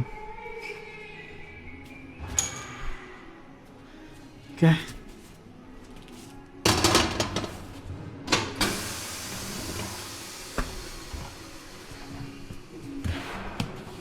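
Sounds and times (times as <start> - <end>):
compressed air hissing: 8.5 - 14.0.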